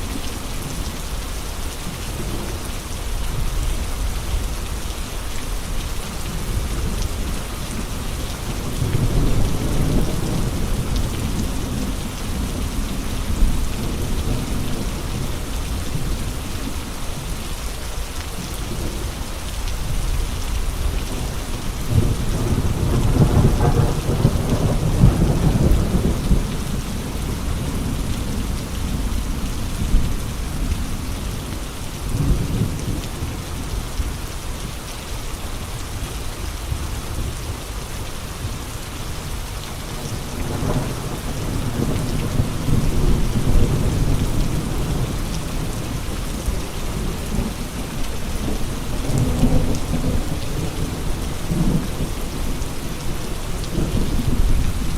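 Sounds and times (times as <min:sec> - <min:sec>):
heavy rain: 0:00.0 - 0:54.9.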